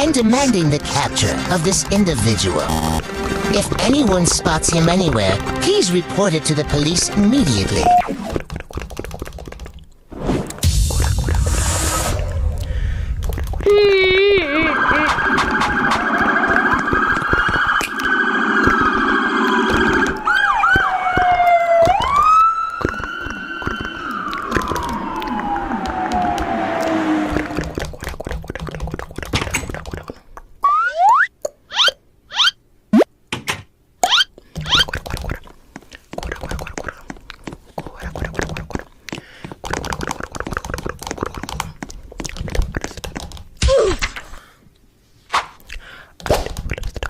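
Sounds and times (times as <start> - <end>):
cartoon clicks knocks and thuds: 8.4 - 9.8, 33.3 - 33.7
low hum: 10.6 - 20.8, 22.4 - 28.6
police sirens wailing: 14.4 - 27.8.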